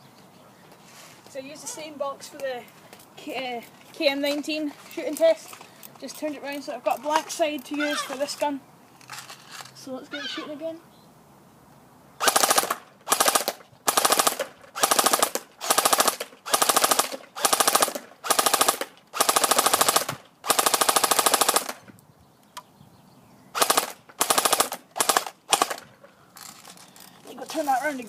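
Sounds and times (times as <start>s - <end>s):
airsoft gun firing bursts: 12.2s - 21.8s, 23.6s - 25.9s.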